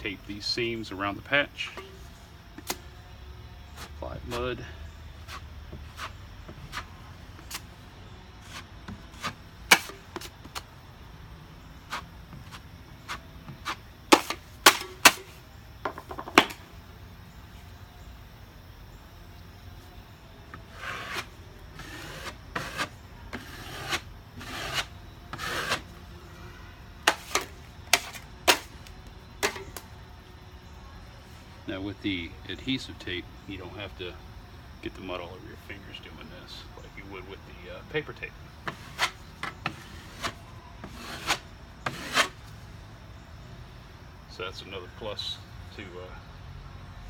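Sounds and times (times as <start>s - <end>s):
knife scraping joint compound: 3.7s - 7.7s, 8.4s - 10.7s, 11.8s - 15.3s, 20.5s - 26.0s, 27.0s - 29.8s, 38.6s - 42.4s.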